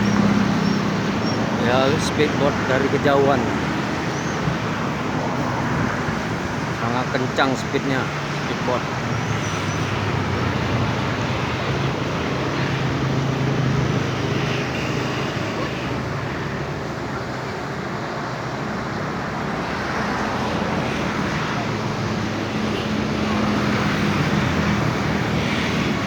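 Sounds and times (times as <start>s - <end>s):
speedboat engine passing: 0.0s - 26.0s.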